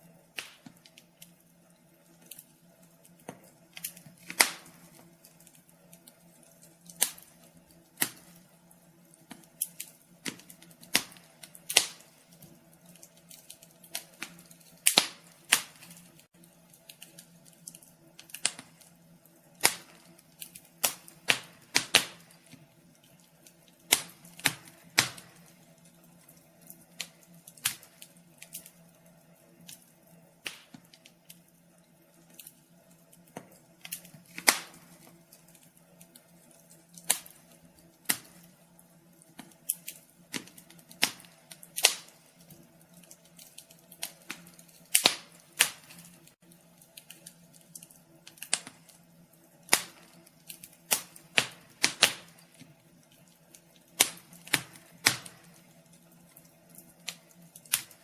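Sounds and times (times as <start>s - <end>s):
faint steady hum: 0.0s - 58.0s
wood fire crackling: 0.0s - 58.0s.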